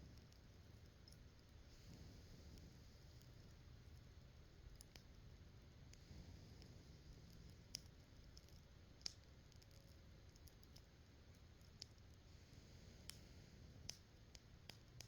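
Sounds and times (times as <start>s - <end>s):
campfire crackling and popping: 4.6s - 5.2s, 7.3s - 12.2s, 13.0s - 15.0s.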